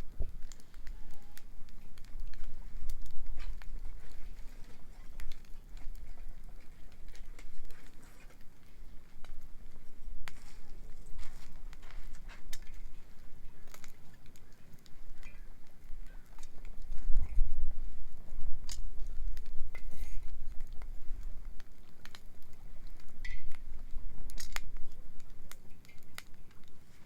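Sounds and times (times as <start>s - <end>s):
wood bonfire crackling: 0.0s - 27.0s.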